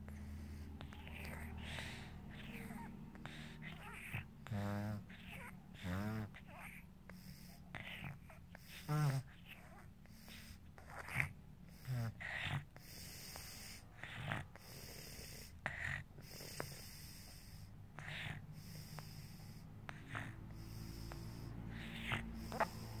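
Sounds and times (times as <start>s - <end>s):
rasping snoring: 0.0s - 23.0s.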